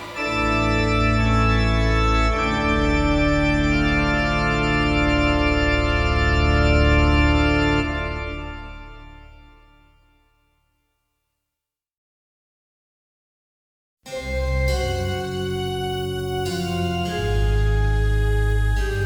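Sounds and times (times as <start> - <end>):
organ-like held chords: 0.0 - 10.1, 14.1 - 19.0.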